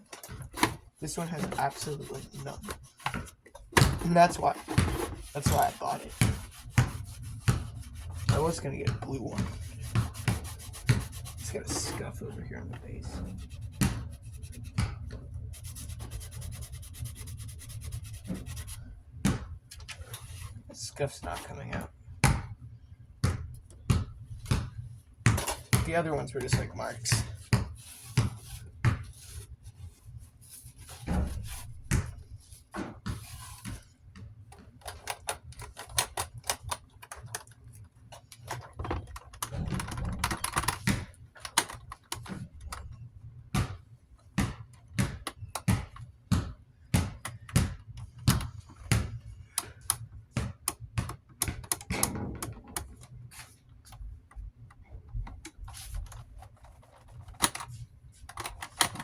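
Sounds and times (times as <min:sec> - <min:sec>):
clicks and knocks of fan parts: 0:00.0 - 0:14.2, 0:32.0 - 0:43.0, 0:44.4 - 0:46.2, 0:47.0 - 0:59.0
rubbing or wiping: 0:00.4 - 0:03.4, 0:04.0 - 0:12.2.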